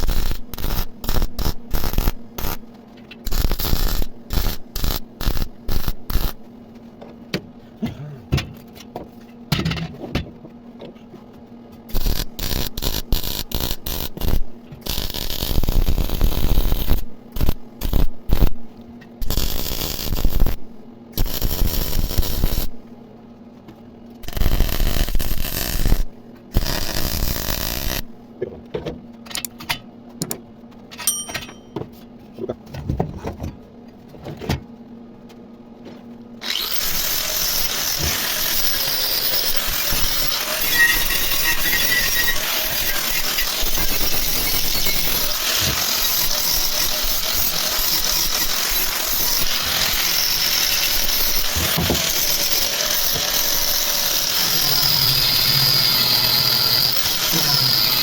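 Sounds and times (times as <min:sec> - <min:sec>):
welding arc crackling: 0:00.0 - 0:06.4, 0:11.9 - 0:18.6, 0:19.2 - 0:22.8, 0:24.2 - 0:28.1, 0:36.4 - 0:58.0
low electrical hum: 0:00.0 - 0:58.0.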